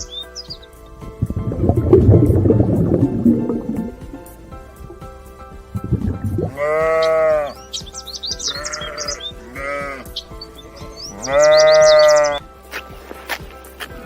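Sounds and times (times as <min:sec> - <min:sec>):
sheep bleating: 0:06.4 - 0:07.6, 0:08.3 - 0:12.4.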